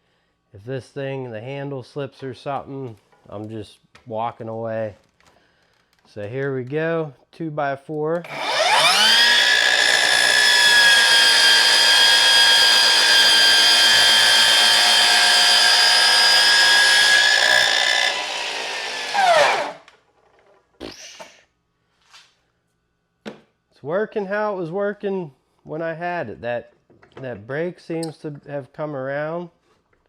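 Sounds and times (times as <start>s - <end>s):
miter saw whining: 8.2s - 19.9s
saw blade winding down: 8.2s - 19.9s.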